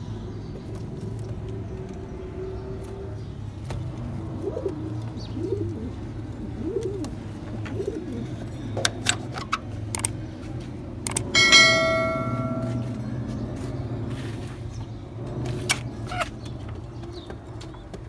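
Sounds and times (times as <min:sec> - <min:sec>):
pigeons cooing: 0:00.0 - 0:10.6
sharp clicks: 0:09.9 - 0:10.2, 0:11.0 - 0:11.4
metallic ring: 0:11.1 - 0:13.1.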